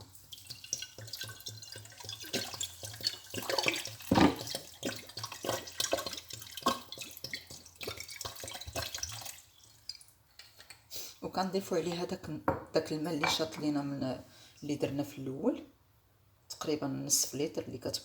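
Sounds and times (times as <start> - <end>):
water pouring into a pot: 0.0 - 10.2.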